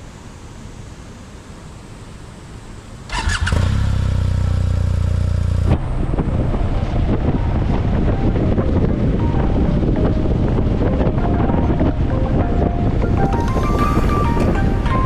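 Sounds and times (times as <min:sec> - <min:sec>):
rough engine sound: 0:03.0 - 0:07.4
motorcycle engine idling: 0:03.1 - 0:05.7
wind buffeting microphone: 0:05.5 - 0:15.0.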